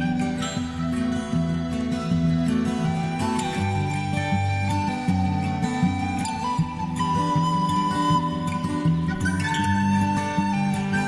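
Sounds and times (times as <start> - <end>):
flute-like held melody: 0.0 - 11.0.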